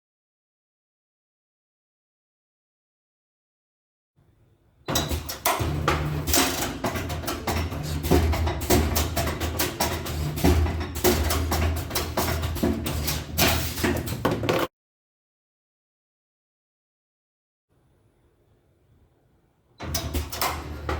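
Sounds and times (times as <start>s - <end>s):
machine motor hum: 4.9s - 14.5s, 19.8s - 20.9s
metallic clicks and knocks: 4.9s - 14.7s.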